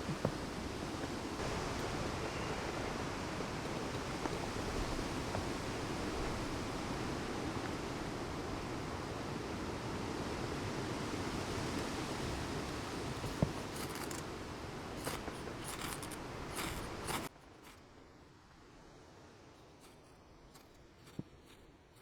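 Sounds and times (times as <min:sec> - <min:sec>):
rain: 0:00.0 - 0:17.2
wind: 0:00.0 - 0:22.0
knife shaving wood: 0:11.5 - 0:18.0, 0:19.6 - 0:22.0.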